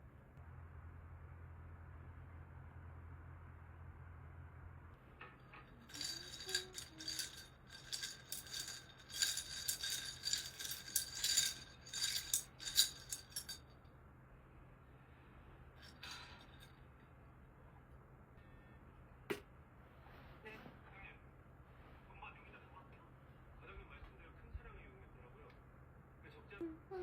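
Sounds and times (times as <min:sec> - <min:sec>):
hard objects clinking and rattling: 0:05.8 - 0:13.7.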